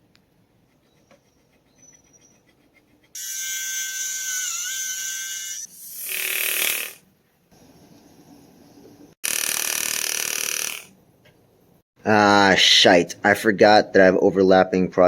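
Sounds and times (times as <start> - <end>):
rotary tool whining: 0.9 - 7.0.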